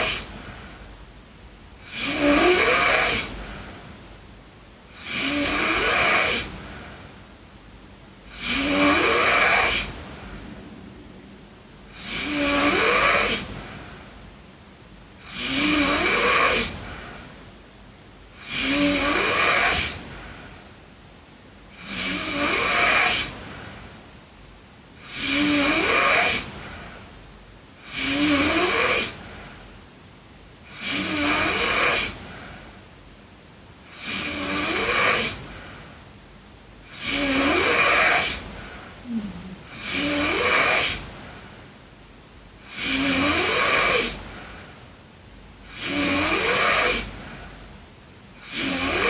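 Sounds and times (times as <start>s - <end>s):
girl snoring: 0.0s - 0.9s, 1.8s - 3.7s, 4.9s - 7.1s, 8.3s - 14.2s, 15.2s - 17.2s, 18.4s - 20.4s, 21.7s - 23.4s, 25.0s - 27.0s, 27.8s - 29.5s, 30.6s - 32.6s, 33.9s - 35.8s, 36.9s - 41.1s, 42.6s - 44.8s, 45.6s - 47.5s, 48.4s - 49.0s
quiet breathing: 0.0s - 15.8s, 16.6s - 18.6s, 19.8s - 21.8s, 23.2s - 25.2s, 26.4s - 28.2s, 29.0s - 30.8s, 32.0s - 34.6s, 35.2s - 42.8s, 44.0s - 49.0s.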